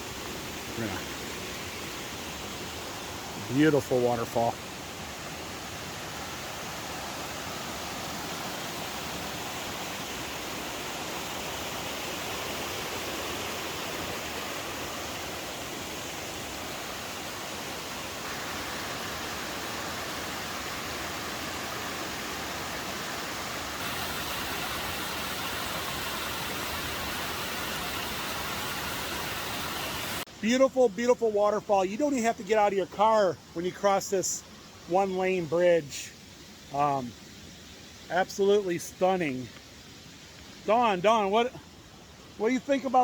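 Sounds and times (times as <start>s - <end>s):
waterfall rushing: 0.0s - 30.3s.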